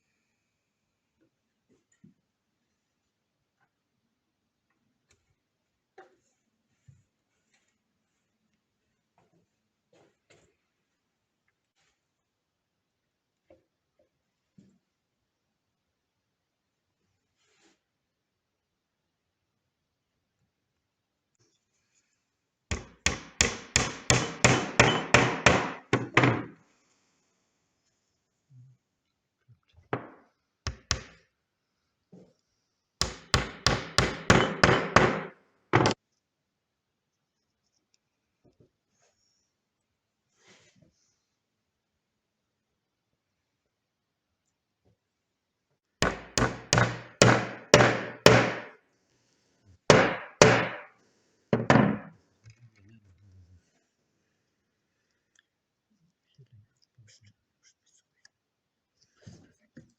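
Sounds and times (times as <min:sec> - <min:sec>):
hammer strikes: 0:22.7 - 0:26.5, 0:33.0 - 0:36.0, 0:46.0 - 0:48.7, 0:49.9 - 0:50.9
hammer blows on woodworking bench: 0:49.9 - 0:50.9.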